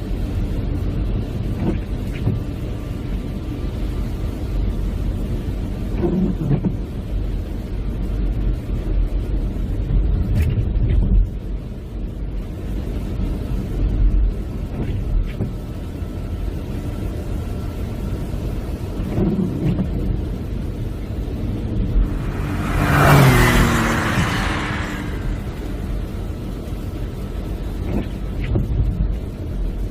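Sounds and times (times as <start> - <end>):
low road rumble: 0.0 - 29.9
loud rushing: 21.4 - 26.6.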